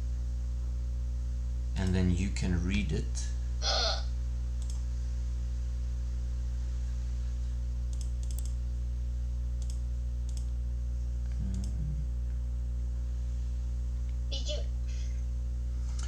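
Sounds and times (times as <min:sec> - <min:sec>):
low electrical hum: 0:00.0 - 0:16.0
faint computer clicks: 0:04.6 - 0:04.9, 0:07.9 - 0:08.6, 0:09.6 - 0:10.6.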